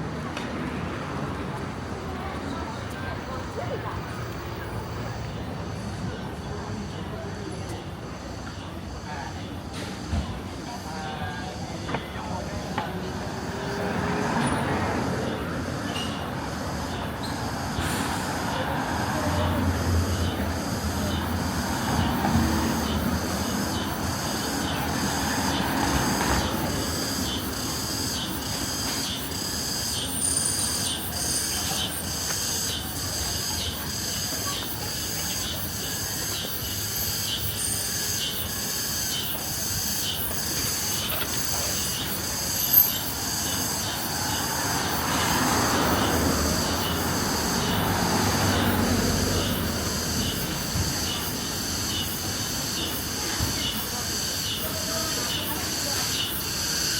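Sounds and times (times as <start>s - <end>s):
vehicle passing: 12.4s - 30.1s, 41.2s - 53.6s.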